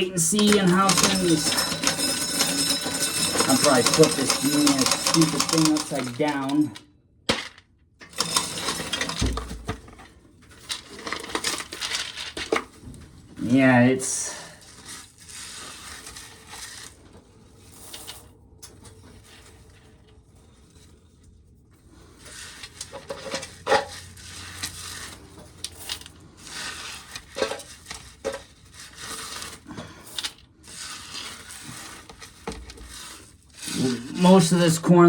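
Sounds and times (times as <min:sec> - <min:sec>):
kernels dropping: 0:00.0 - 0:10.0
corn rattling and scraping: 0:00.0 - 0:12.9, 0:13.7 - 0:21.2, 0:21.8 - 0:35.0.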